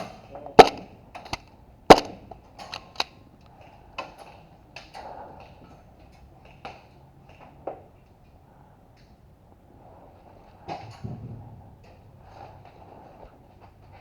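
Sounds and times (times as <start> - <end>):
airsoft gun shots: 0.6 - 3.0.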